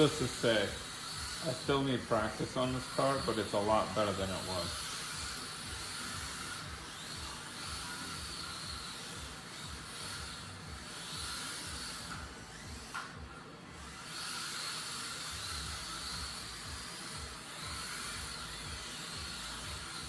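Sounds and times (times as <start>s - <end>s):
steady hiss: 0.0s - 4.8s
electric motor whining: 0.0s - 20.0s.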